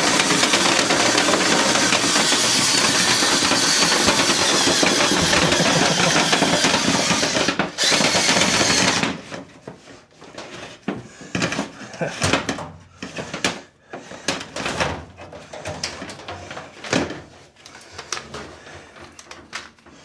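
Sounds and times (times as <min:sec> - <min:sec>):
drill spinning vent brush rod: 0:00.0 - 0:09.2.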